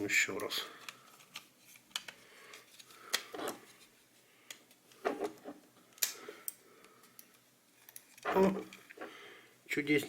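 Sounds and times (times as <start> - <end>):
plastic parts rubbing: 0.8 - 4.0.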